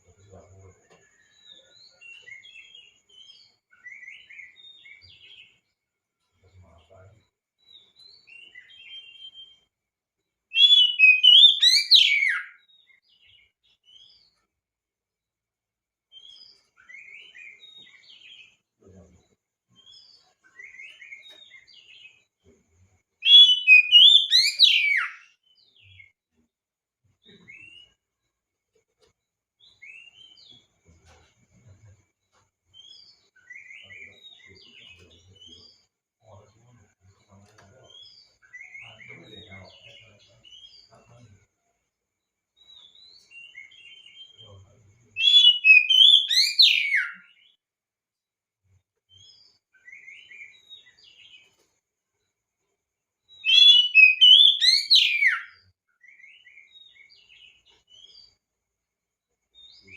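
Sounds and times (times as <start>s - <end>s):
bird singing: 0.0s - 9.8s, 10.5s - 14.5s, 16.1s - 26.5s, 27.1s - 28.3s, 29.0s - 47.6s, 49.1s - 52.4s, 53.2s - 58.5s, 59.4s - 59.9s
bird singing whistled notes: 7.7s - 9.7s, 10.5s - 14.2s, 23.2s - 26.2s, 42.6s - 47.6s, 49.1s - 51.5s, 53.3s - 58.4s.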